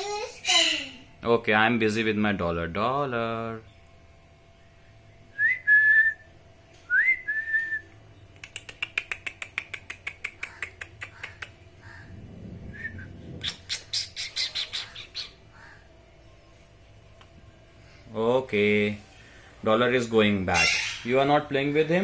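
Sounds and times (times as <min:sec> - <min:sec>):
parrot harsh clicking squawks: 0:08.4 - 0:12.1
parrot whistling: 0:11.1 - 0:15.8.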